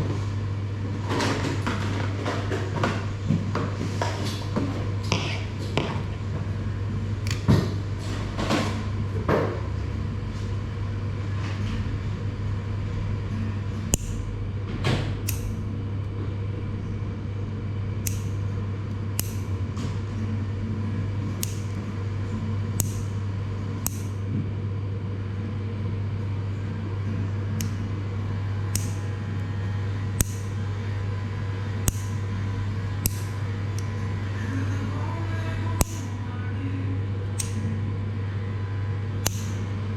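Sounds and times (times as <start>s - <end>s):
electric hair clippers humming: 6.5s - 7.7s, 13.2s - 14.5s, 15.1s - 16.8s, 17.9s - 24.3s, 25.4s - 36.4s, 37.1s - 39.9s
crisp snips or clicks: 18.1s - 18.4s, 19.2s - 19.5s, 21.4s - 21.7s.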